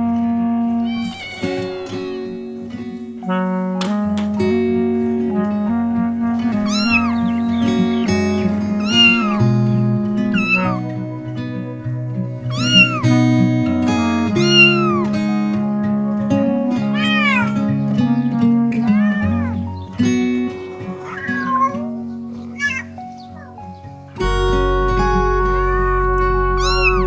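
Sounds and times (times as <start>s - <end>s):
plucked acoustic guitar music: 0.0s - 27.0s
cat meowing: 0.8s - 3.0s, 6.6s - 8.0s, 8.8s - 9.4s, 10.3s - 10.8s, 12.5s - 13.0s, 14.3s - 15.1s, 16.9s - 17.6s, 18.8s - 20.0s, 20.7s - 23.6s, 26.6s - 27.0s.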